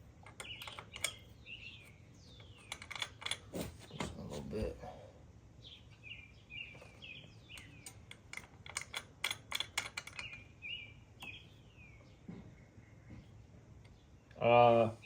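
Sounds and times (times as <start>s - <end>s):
small bird chirping: 0.0s - 4.7s, 5.6s - 8.5s, 9.4s - 15.0s
hand tools clicking: 2.4s - 3.8s, 7.5s - 10.4s.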